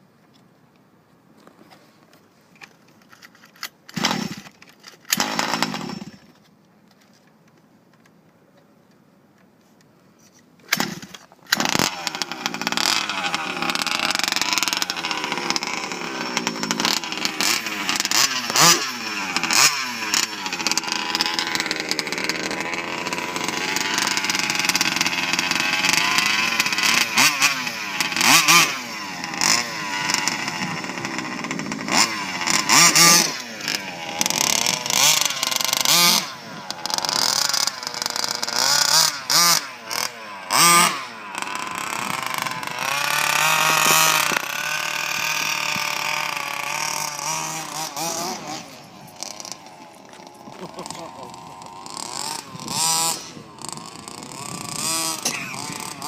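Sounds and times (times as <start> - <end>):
small engine revving: 3.6 - 6.4, 10.7 - 56.0.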